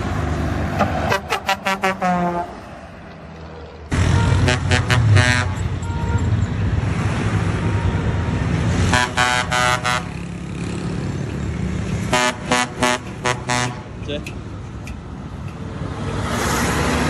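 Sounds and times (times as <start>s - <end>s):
heavy engine running: 0.0s - 15.8s
bus horn short toots: 1.0s - 2.6s, 4.1s - 6.3s, 8.9s - 10.1s, 12.1s - 13.8s.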